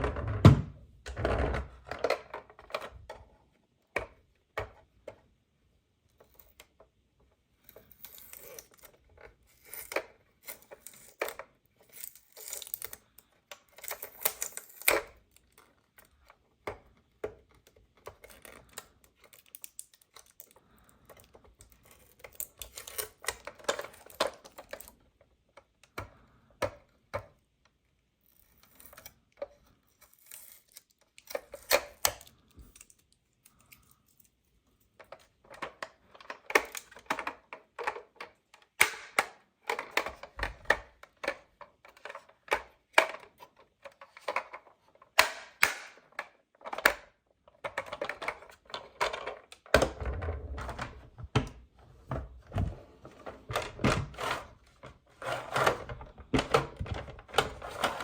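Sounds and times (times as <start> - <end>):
plastic toys clicking and tapping: 7.6 - 27.8, 35.0 - 49.8.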